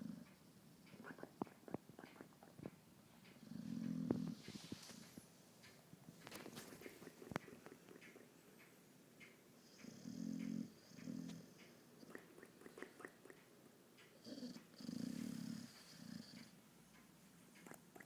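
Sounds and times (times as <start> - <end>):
dog snoring with whistle: 9.6 - 12.2, 14.2 - 16.5
faint small clicks: 15.4 - 18.0.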